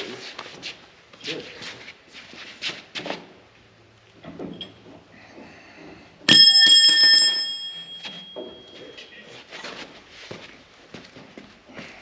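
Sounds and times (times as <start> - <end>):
metal clang ringing: 6.3 - 8.8
faint knocks and shuffling of tools: 7.7 - 12.0.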